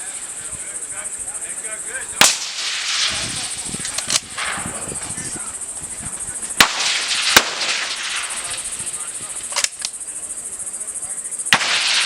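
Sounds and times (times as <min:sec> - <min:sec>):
steady high buzz: 0:00.0 - 0:12.0
suppressed rifle shots: 0:02.2 - 0:04.7, 0:06.6 - 0:08.8, 0:11.5 - 0:12.0.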